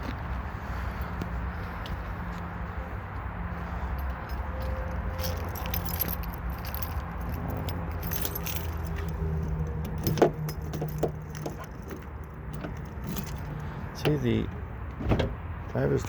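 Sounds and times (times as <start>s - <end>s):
car keys jangling: 3.9s - 14.3s.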